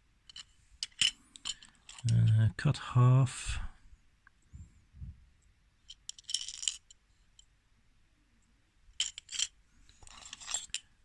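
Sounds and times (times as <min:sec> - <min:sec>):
coins clinking: 0:05.9 - 0:07.0, 0:09.0 - 0:09.5.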